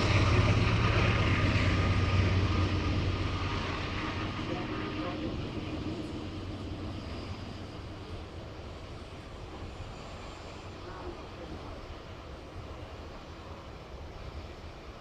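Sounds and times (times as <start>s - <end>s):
engine rumble passing: 0.0s - 10.8s.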